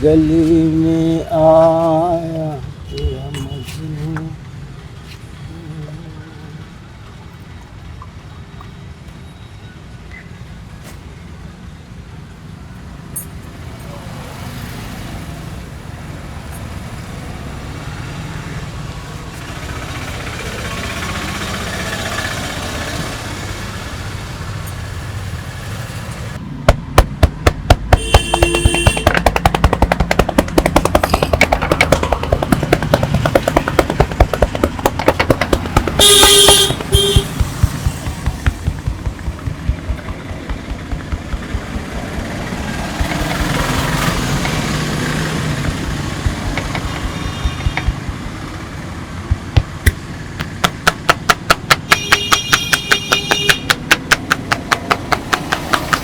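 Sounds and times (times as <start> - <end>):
street traffic noise: 0.0 - 56.0
vehicle horn honking: 2.8 - 4.0, 27.9 - 29.4, 35.8 - 38.7, 46.6 - 48.2, 51.9 - 53.7.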